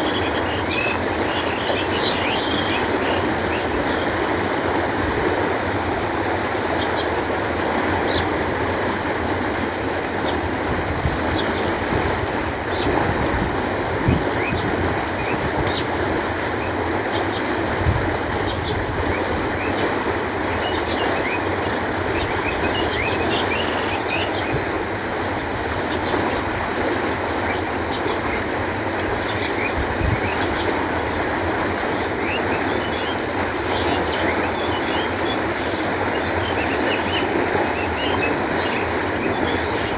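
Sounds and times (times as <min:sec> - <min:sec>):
canal water flowing: 0:00.0 - 0:39.9.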